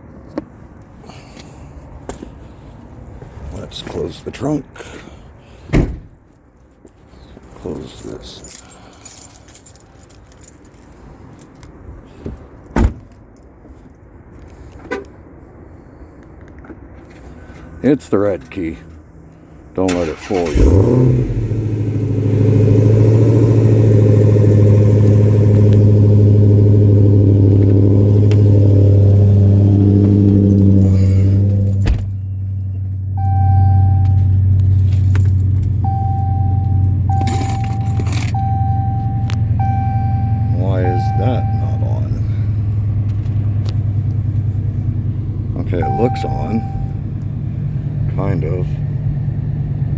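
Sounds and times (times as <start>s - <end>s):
car part shutting with a thump: 5.7s - 6.2s
car keys jangling: 6.6s - 11.8s, 12.4s - 13.9s, 20.0s - 42.3s
keys jangling: 6.6s - 11.8s, 30.4s - 32.7s, 34.4s - 35.9s, 36.9s - 38.5s
dashboard warning chime: 32.1s - 34.6s, 35.8s - 42.4s, 45.7s - 47.1s.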